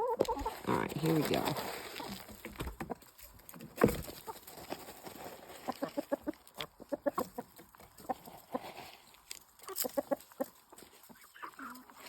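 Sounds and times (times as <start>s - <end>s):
chickens clucking: 0.0s - 12.0s.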